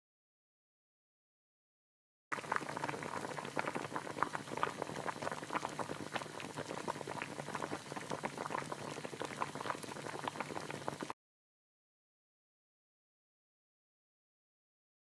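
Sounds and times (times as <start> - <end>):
soup bubbling in pot: 2.3 - 11.2.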